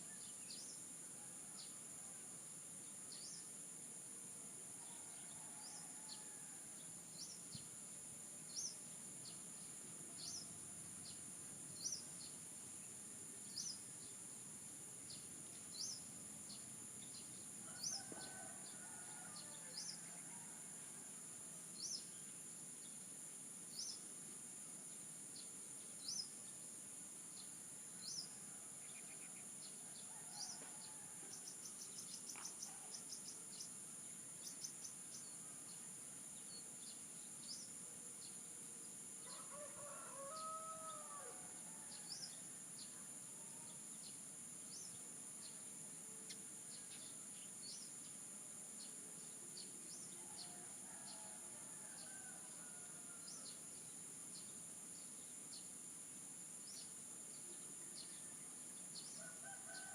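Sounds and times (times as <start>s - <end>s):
high insect drone: 0.0s - 59.9s
rooster crowing: 17.6s - 21.1s, 29.9s - 31.4s, 39.2s - 42.1s, 50.4s - 53.4s, 59.2s - 59.9s.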